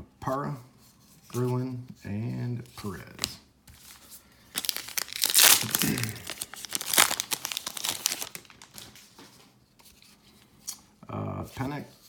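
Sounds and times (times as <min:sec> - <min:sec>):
wrapper crinkling and tearing: 0:03.8 - 0:09.1.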